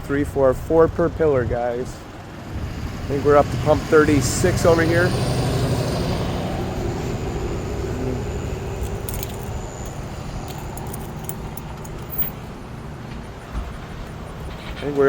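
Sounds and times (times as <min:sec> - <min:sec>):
vehicle engine running: 0:02.0 - 0:14.9
metallic jingling clicks: 0:08.8 - 0:12.5.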